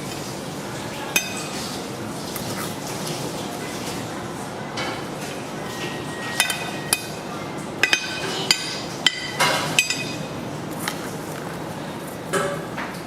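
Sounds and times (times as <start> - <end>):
metal utensil clinking on dish: 1.1 - 1.7, 4.8 - 7.2, 7.8 - 11.1.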